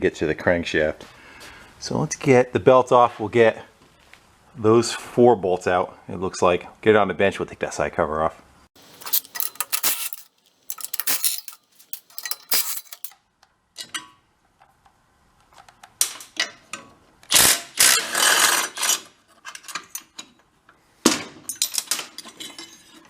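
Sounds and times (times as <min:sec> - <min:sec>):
metal tools clinking on metal: 0:08.8 - 0:13.1
rapid mechanical clicking: 0:08.8 - 0:13.1.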